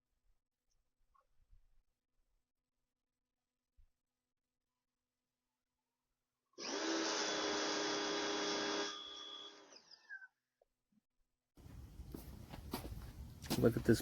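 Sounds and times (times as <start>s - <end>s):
pressure washer motor whirring: 6.6s - 10.0s.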